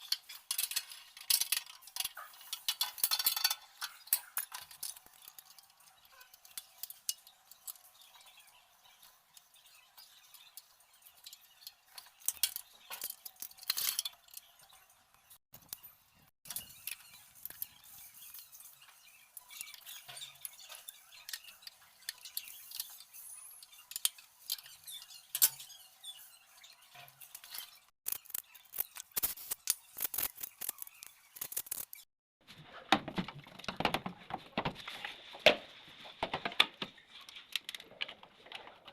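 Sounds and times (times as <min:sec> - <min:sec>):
metal tools clicking and clinking: 0:00.0 - 0:08.2, 0:10.0 - 0:14.8, 0:19.4 - 0:25.9.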